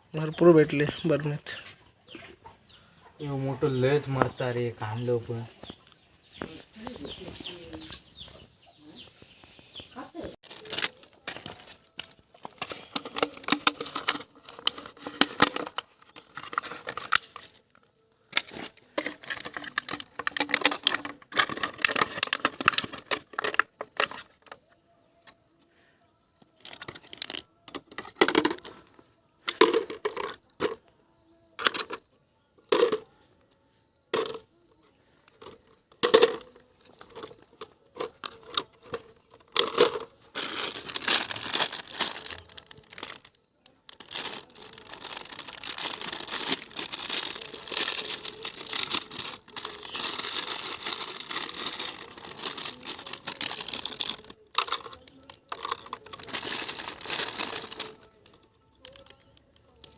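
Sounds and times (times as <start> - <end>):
plastic bottle crinkling and knocking: 10.4 - 25.5, 26.4 - 30.9, 31.6 - 33.1, 34.1 - 59.9.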